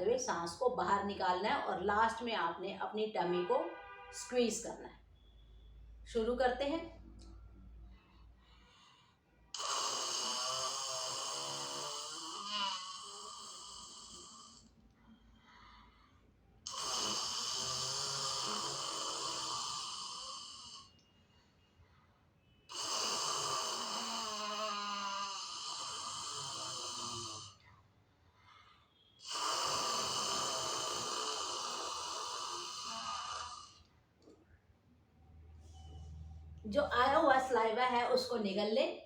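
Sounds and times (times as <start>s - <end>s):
quiet in-breaths: 5.0s - 6.1s, 7.0s - 9.6s, 11.8s - 36.6s.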